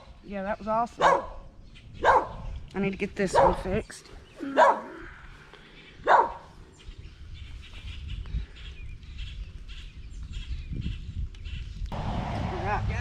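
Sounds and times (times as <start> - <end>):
dog barking: 1.0 - 1.4, 2.0 - 2.4, 3.3 - 3.7, 4.5 - 5.0, 6.0 - 6.5
low rumble: 11.8 - 13.0.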